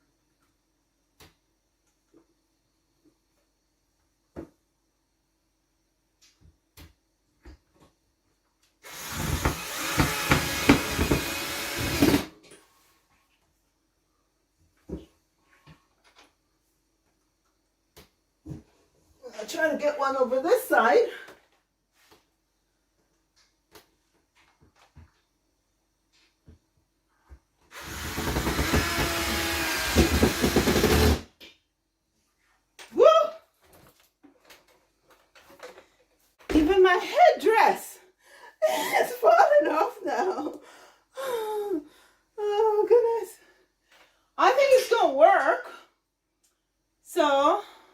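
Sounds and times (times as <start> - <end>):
power drill driving screw: 8.8 - 12.4, 27.7 - 31.3.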